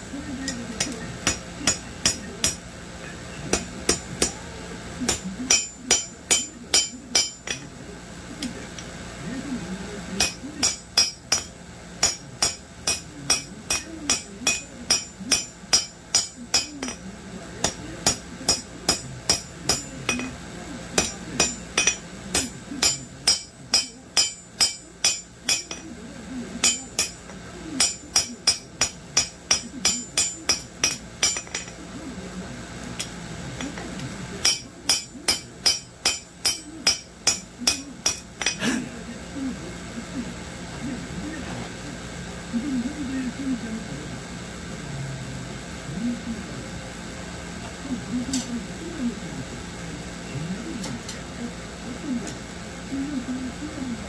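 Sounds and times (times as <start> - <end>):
hammer striking steel on anvil: 0.4 - 2.7, 3.5 - 4.4, 5.0 - 7.7, 10.2 - 20.4, 21.0 - 25.9, 26.6 - 31.8, 33.0 - 38.6.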